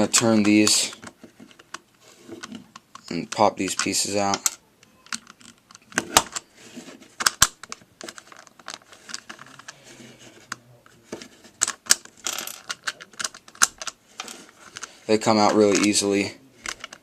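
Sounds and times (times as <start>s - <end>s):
plastic puzzle pieces clicking: 0.1s - 6.5s, 7.1s - 17.0s.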